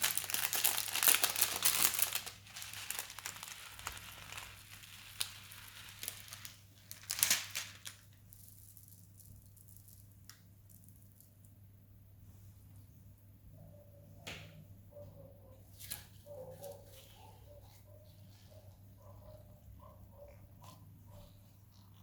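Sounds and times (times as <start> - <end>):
slime crackling as kneaded: 0.0 - 11.5.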